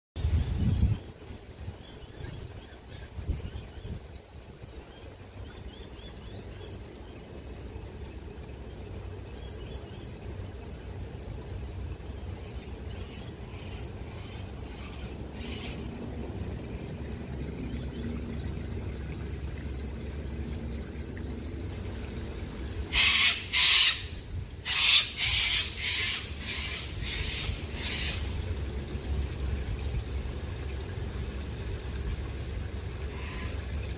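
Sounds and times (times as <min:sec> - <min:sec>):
steady low rumble: 0:00.2 - 0:33.9
bird harsh calls: 0:22.9 - 0:28.3.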